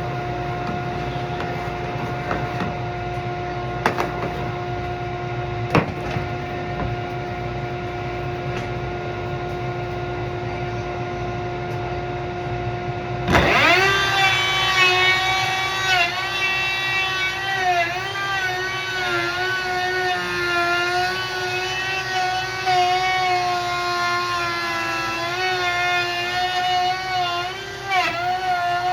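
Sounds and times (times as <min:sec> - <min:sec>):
steady machine hum: 0:00.0 - 0:28.9
motor spinning up: 0:13.2 - 0:28.9.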